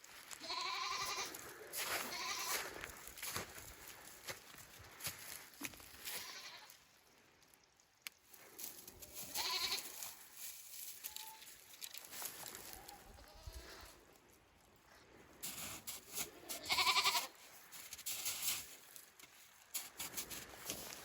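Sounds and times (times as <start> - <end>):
goats bleating: 0.4 - 2.8, 6.0 - 6.8, 9.2 - 10.0, 16.2 - 17.3.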